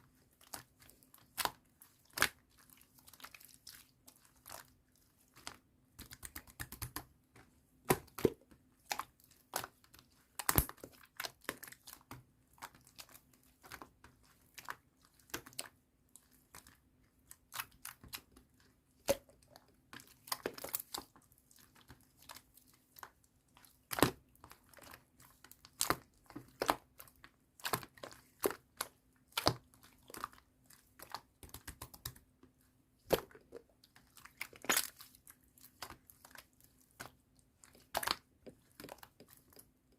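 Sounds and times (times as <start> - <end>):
slime squished by hand: 33.0 - 39.9.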